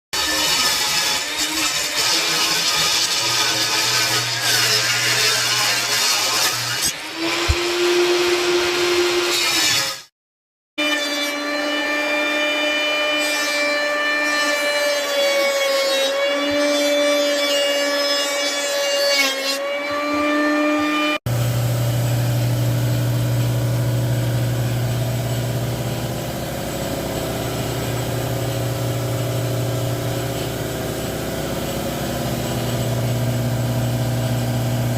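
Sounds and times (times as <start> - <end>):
power tool whining: 11.3 - 34.9
low motor hum: 21.3 - 34.9.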